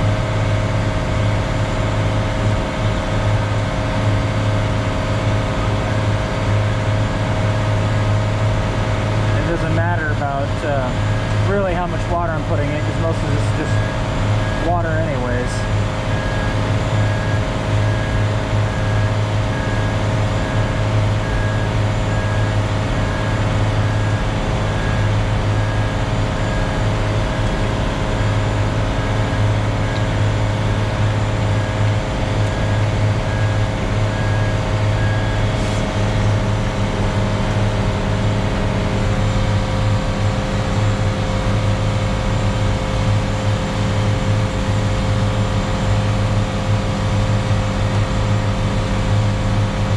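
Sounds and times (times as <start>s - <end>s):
diesel engine running: 0.0s - 49.9s.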